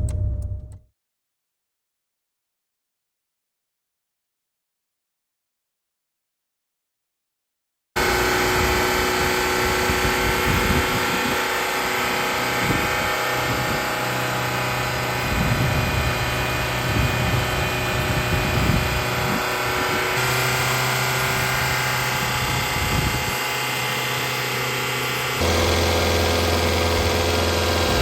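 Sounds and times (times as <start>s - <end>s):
low hum: 0.0s - 0.8s, 8.1s - 28.0s
low rumbles: 0.0s - 0.8s
car engine running: 8.0s - 28.0s.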